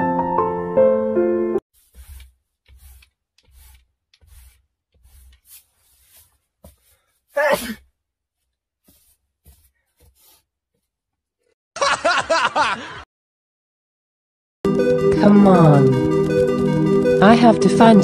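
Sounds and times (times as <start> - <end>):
person sneezing: 7.3 - 7.9.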